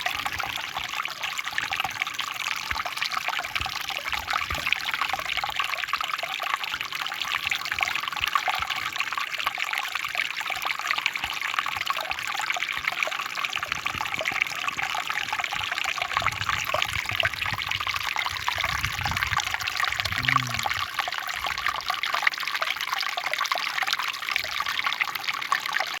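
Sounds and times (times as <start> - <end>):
water running and trickling: 0.0 - 26.0.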